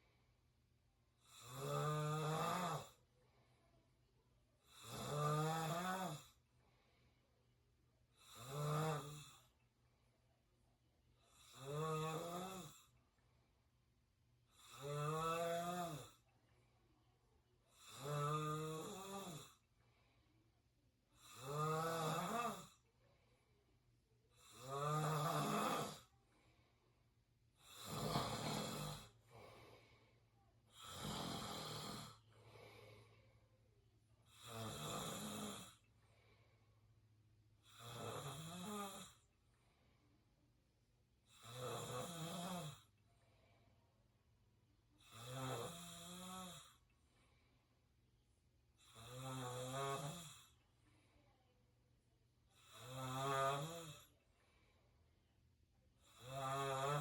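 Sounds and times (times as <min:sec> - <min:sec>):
person snoring: 0:01.2 - 0:03.0, 0:04.6 - 0:06.4, 0:08.2 - 0:09.5, 0:11.3 - 0:12.9, 0:14.6 - 0:16.2, 0:17.7 - 0:19.6, 0:21.2 - 0:22.8, 0:24.4 - 0:26.1, 0:27.6 - 0:29.8, 0:30.7 - 0:33.1, 0:34.3 - 0:35.8, 0:37.6 - 0:39.2, 0:41.3 - 0:42.9, 0:45.0 - 0:46.8, 0:48.8 - 0:50.6, 0:52.5 - 0:54.1, 0:56.0 - 0:57.0.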